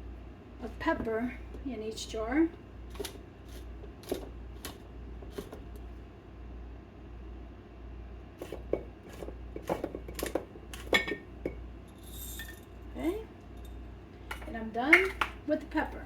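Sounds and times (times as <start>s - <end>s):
pepper mill grinding: 11.9s - 12.7s.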